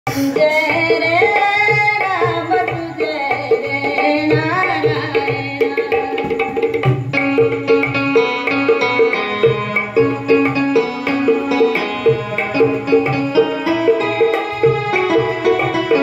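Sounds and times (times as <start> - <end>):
person singing devotional song: 0.1 - 6.7
tabla rhythm: 0.1 - 16.0.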